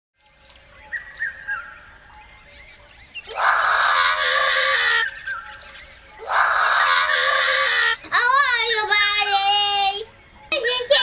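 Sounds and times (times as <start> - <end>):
bird chirps: 0.2 - 6.8.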